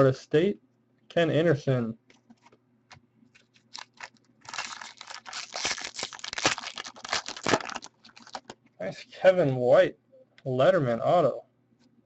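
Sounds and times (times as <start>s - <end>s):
packaging crinkling and rustling: 3.4s - 8.6s.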